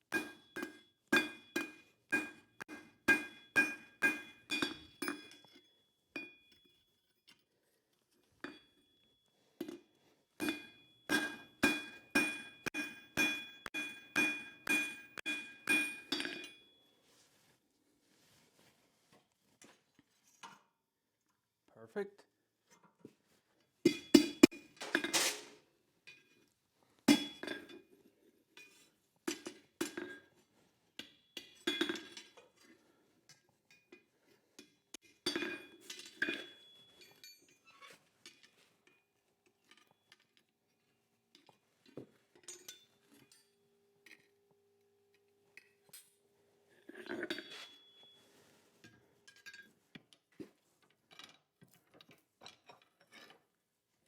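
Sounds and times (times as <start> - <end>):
hammer strikes on anvil: 0.1 - 5.4, 10.4 - 16.6, 23.9 - 24.6
steady ringing tone: 10.4 - 16.8.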